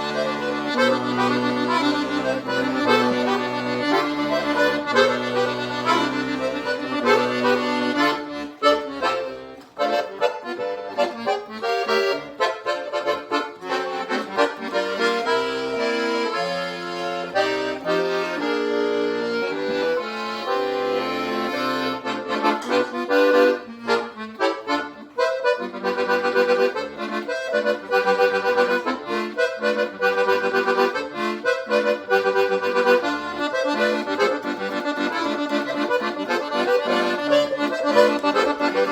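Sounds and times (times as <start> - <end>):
accordion melody: 0.0 - 38.9
guitar: 0.0 - 38.9.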